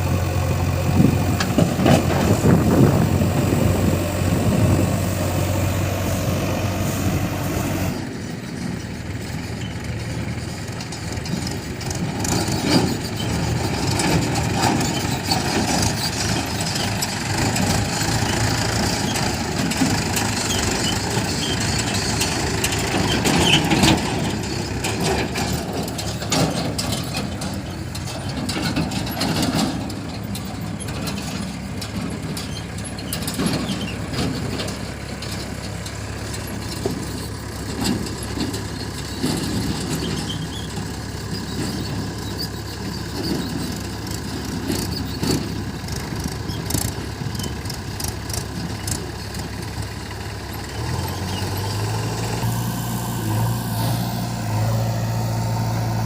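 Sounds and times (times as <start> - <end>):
diesel engines running: 0.0 - 56.0
knocks and clatter: 10.8 - 35.5.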